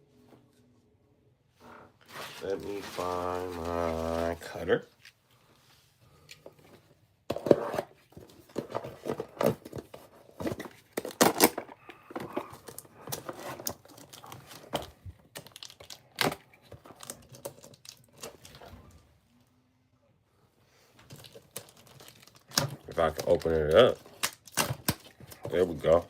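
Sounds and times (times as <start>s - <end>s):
tearing and crinkling of wrapping: 2.1s - 5.2s, 10.4s - 18.8s, 21.0s - 26.0s.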